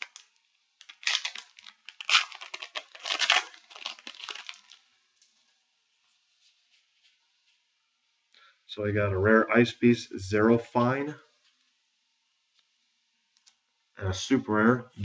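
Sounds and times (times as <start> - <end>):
foil wrapper tearing and crinkling: 0.0 - 4.9.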